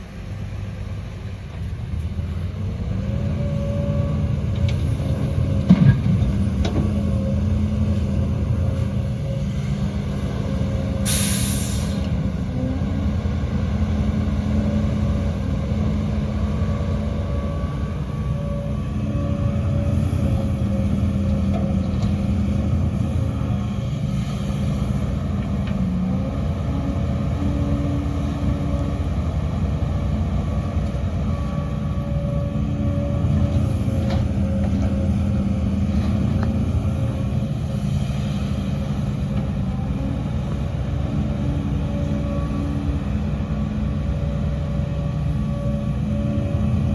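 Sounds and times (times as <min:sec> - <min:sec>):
heavy machinery diesel engine: 0:00.0 - 0:46.9
hiss of released air: 0:11.0 - 0:12.1.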